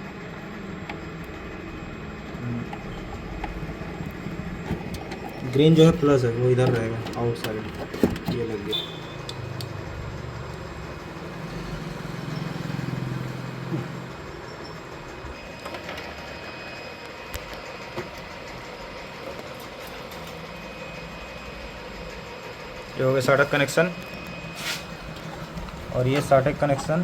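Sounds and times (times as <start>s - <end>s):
low background rumble and hum: 0.0s - 11.9s.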